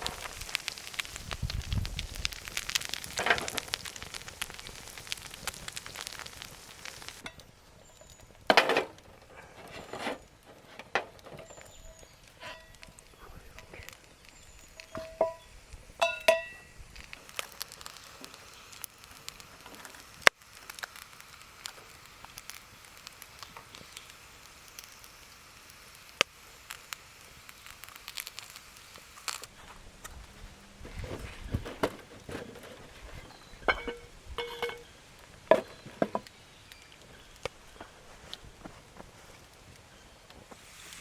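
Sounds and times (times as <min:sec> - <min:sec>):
campfire crackling and popping: 0:00.0 - 0:41.0.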